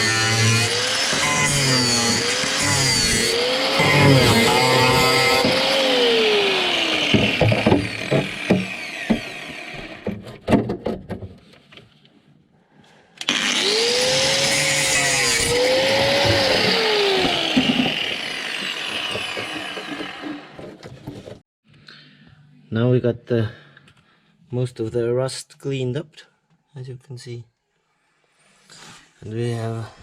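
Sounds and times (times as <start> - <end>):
angle grinder on sheet metal: 0.0 - 10.0, 13.2 - 20.6
sharp knocks: 7.0 - 11.2.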